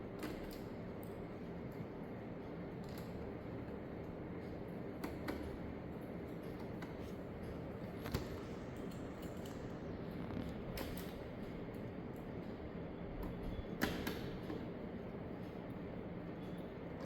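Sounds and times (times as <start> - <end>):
low background hum and hiss: 0.0 - 17.0.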